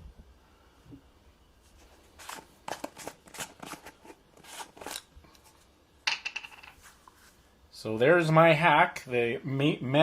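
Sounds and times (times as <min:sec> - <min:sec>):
packaging rustling and clicking: 0:02.2 - 0:05.6.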